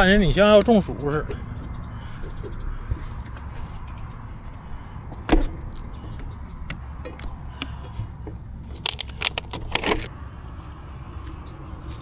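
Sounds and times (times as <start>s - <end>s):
steady low rumble: 0.0s - 12.0s
sharp clicks and rattling: 8.7s - 10.1s.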